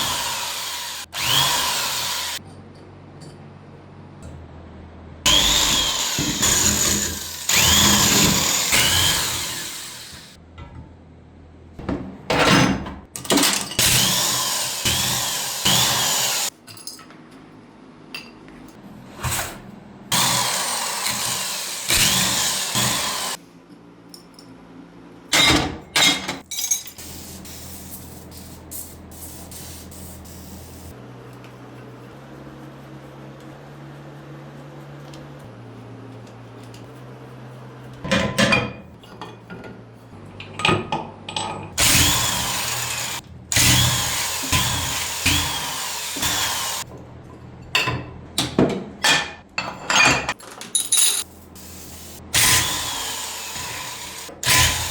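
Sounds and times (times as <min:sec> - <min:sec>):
handheld power tool running: 0:00.0 - 0:02.4, 0:05.3 - 0:10.4, 0:13.8 - 0:16.5, 0:20.1 - 0:23.4, 0:41.8 - 0:46.9, 0:51.6 - 0:54.9.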